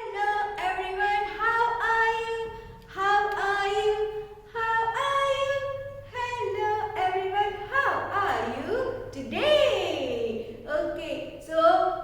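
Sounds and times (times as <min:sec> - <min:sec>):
high voice singing unaccompanied: 0:00.0 - 0:12.0.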